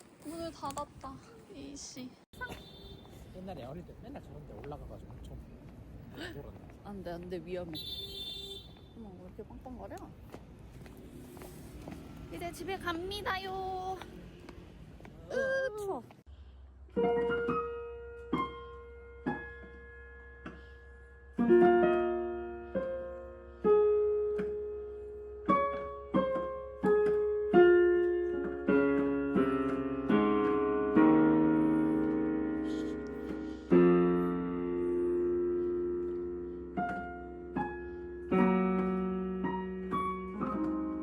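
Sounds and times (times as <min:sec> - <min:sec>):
slow solo piano music: 0:16.9 - 0:41.0.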